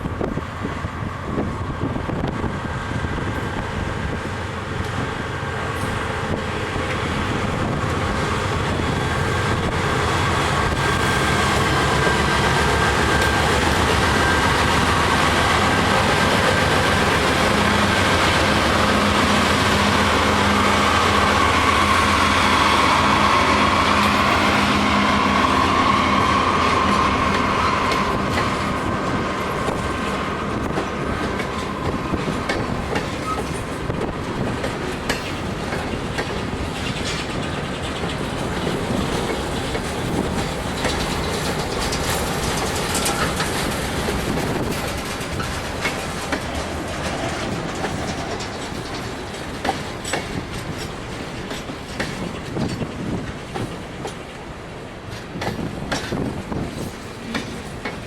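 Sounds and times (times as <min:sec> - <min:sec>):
train wheels clacking over rails: 0:01.3 - 0:58.0
high squeal: 0:20.5 - 0:28.9.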